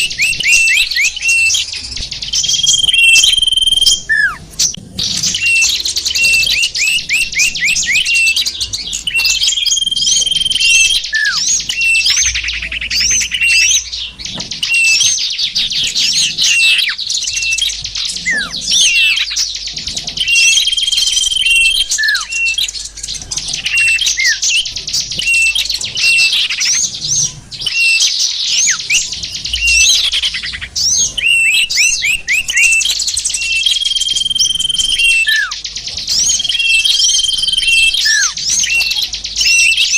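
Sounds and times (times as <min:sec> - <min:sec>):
small birds chirping and twittering: 0:00.0 - 0:39.9
downward-slurring whistles: 0:02.3 - 0:08.4, 0:09.0 - 0:13.9, 0:20.2 - 0:22.7, 0:27.6 - 0:39.9.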